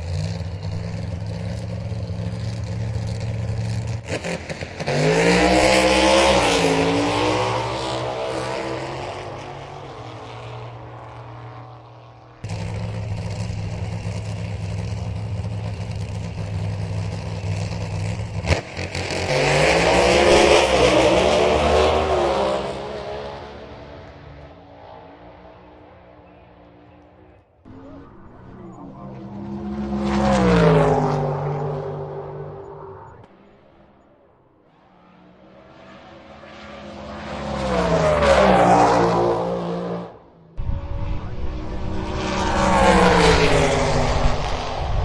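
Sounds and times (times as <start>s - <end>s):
deep engine rumble: 0.0s - 4.8s, 9.0s - 18.8s, 23.8s - 35.1s, 40.2s - 45.0s
race car engine accelerating: 0.0s - 45.0s.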